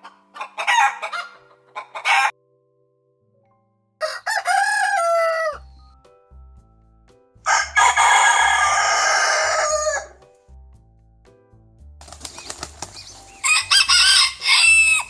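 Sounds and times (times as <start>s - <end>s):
rooster crowing: 4.0s - 5.6s, 7.5s - 10.1s, 13.4s - 15.0s.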